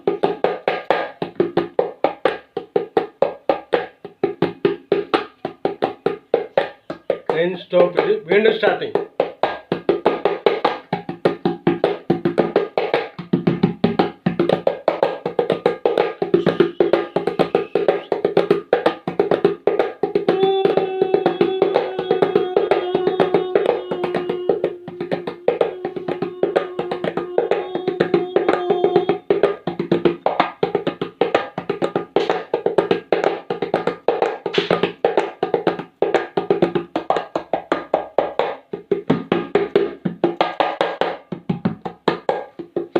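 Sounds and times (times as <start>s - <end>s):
fast percussion rhythm: 0.0s - 42.9s
steady held note: 16.3s - 18.0s, 20.3s - 29.2s.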